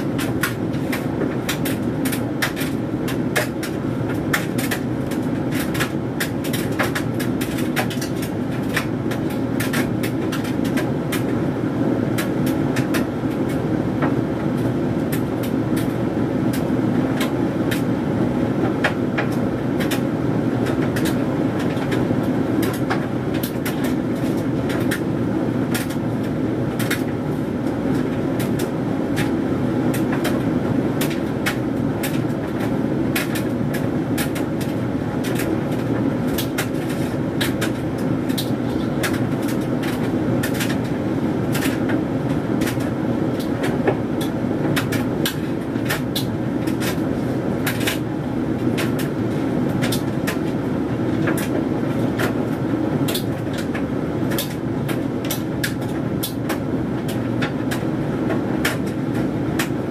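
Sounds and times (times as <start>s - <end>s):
clothes tumbling clicks and taps: 0.0s - 11.4s, 25.7s - 50.6s, 53.1s - 59.8s
tumble dryer humming: 0.0s - 59.9s.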